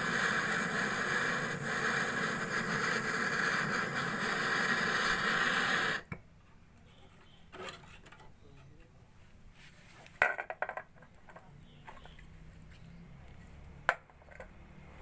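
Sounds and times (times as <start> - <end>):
machine hissing over low hum: 0.0 - 6.1.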